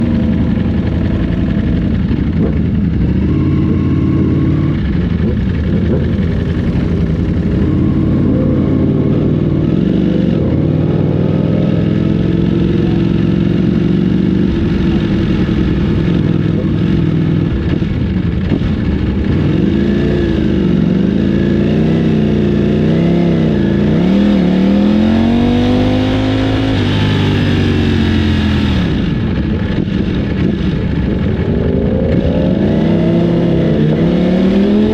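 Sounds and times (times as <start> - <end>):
motorcycle engine idling and revving: 0.0 - 34.9.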